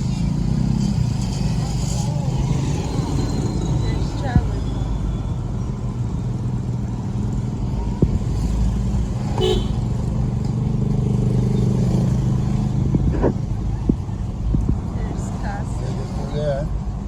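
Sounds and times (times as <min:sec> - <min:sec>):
vehicle engine running: 0:00.0 - 0:17.0
short horn beep: 0:09.4 - 0:09.8.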